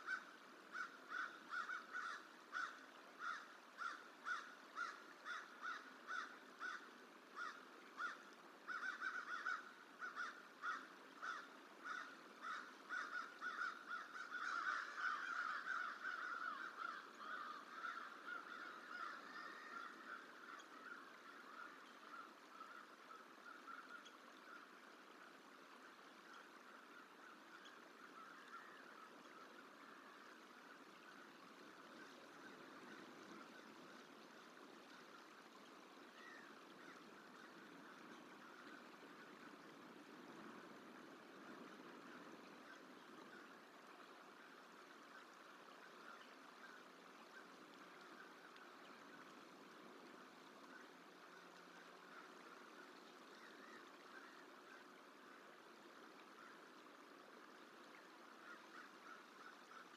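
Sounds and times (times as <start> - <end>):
crow cawing: 0.0 - 24.1
faint steady hiss: 0.0 - 59.9.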